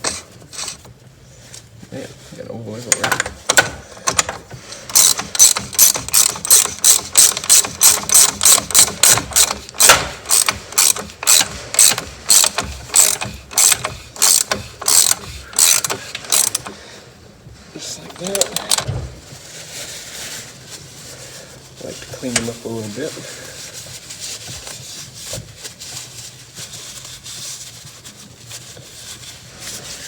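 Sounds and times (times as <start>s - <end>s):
ratchet wrench clicking: 3.5s - 16.8s.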